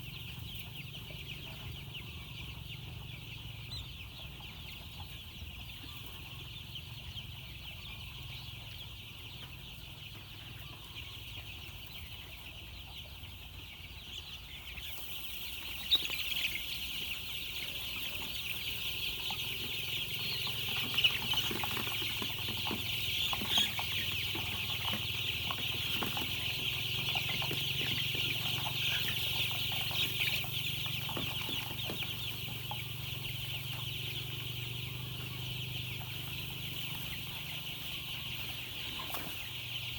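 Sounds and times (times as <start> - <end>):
chicks peeping: 0.0 - 39.9.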